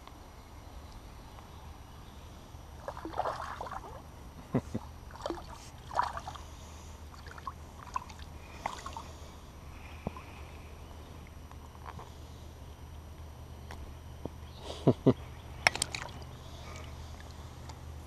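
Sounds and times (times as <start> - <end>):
steady low hum: 0.0 - 18.0
water splashing and sloshing: 2.8 - 4.1, 5.1 - 6.5, 7.1 - 9.1, 15.7 - 17.3.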